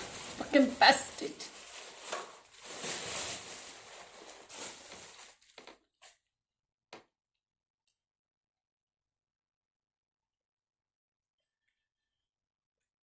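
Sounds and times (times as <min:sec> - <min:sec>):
packaging rustling: 0:00.0 - 0:05.8.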